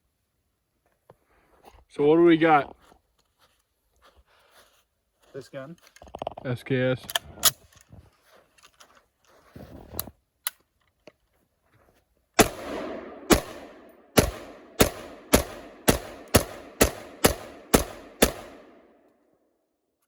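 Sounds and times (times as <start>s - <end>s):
rifle shots with rolling echo: 12.4s - 19.2s.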